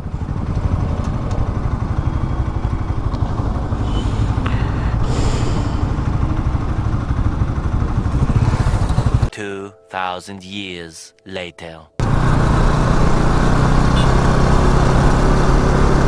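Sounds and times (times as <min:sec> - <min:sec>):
motorcycle engine running: 0:00.0 - 0:09.3, 0:12.0 - 0:16.0.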